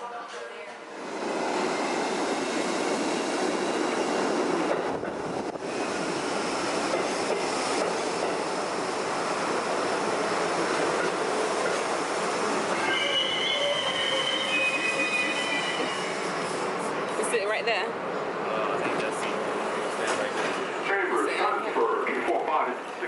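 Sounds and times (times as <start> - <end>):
subway train running on track: 0.0 - 23.0
faint high wheel squeal: 12.7 - 16.6.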